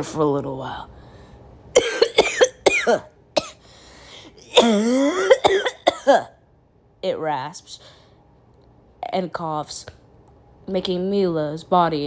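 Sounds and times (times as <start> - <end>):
woman coughing: 1.8 - 3.6, 4.4 - 6.4.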